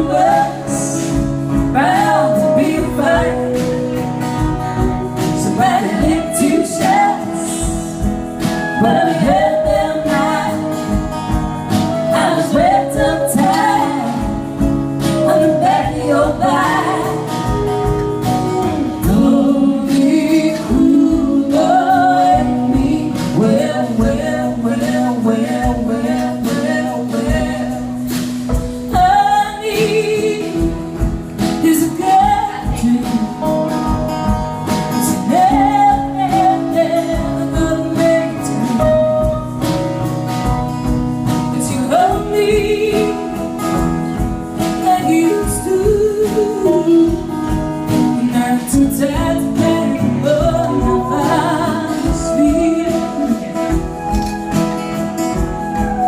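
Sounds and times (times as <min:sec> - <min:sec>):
man and woman singing: 0:00.0 - 0:17.6, 0:18.7 - 0:39.3, 0:41.5 - 0:43.8, 0:44.6 - 0:54.2.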